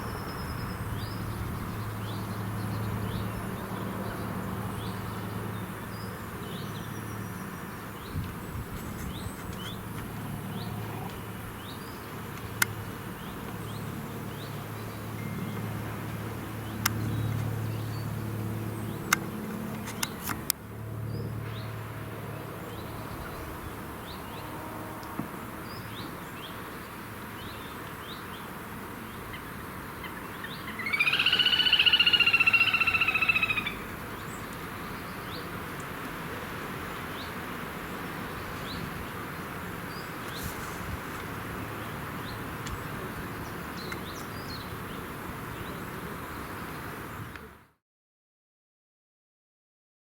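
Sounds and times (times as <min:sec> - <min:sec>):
birds chirping: 0:29.1 - 0:35.5
bird trilled call: 0:30.1 - 0:33.9.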